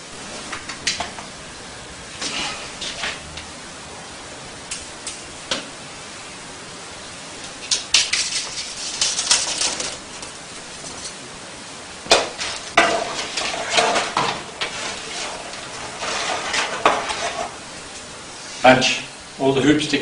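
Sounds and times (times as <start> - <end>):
steady hiss: 0.0 - 20.0
parts rattling and scraping: 7.5 - 11.3, 12.1 - 17.7.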